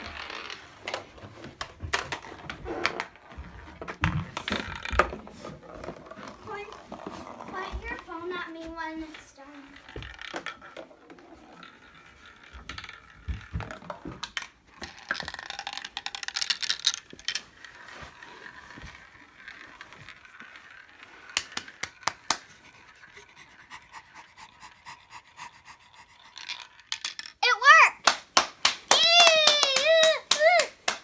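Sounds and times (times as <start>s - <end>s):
marbles rolling on track: 0.0s - 31.0s
marbles clacking on track: 9.0s - 23.3s, 26.2s - 31.0s.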